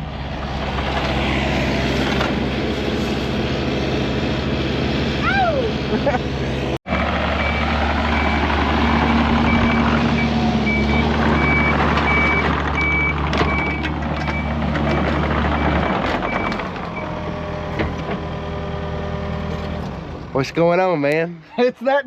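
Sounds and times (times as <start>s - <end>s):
engine running: 0.0s - 20.9s
reversing alarm beeping: 6.9s - 14.6s.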